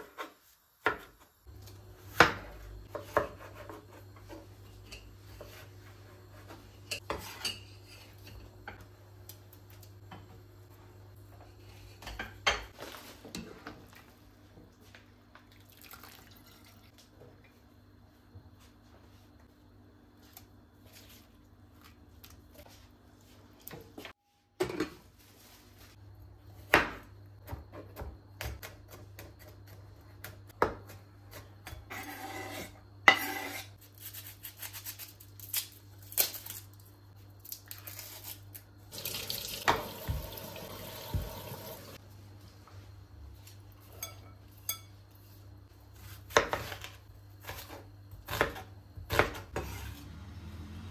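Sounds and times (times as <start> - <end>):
tap running: 39.0 - 42.0
dishes and utensils clinking: 43.8 - 45.0.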